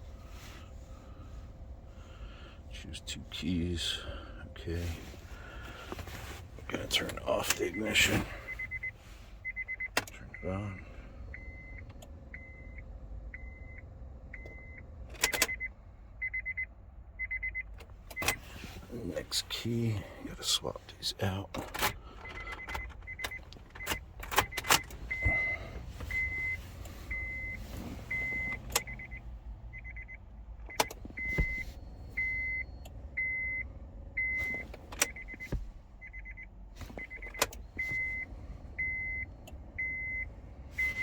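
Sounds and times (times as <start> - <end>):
car keys clicking and rattling: 15.0 - 15.6, 21.2 - 29.4, 30.5 - 32.6, 34.3 - 38.2.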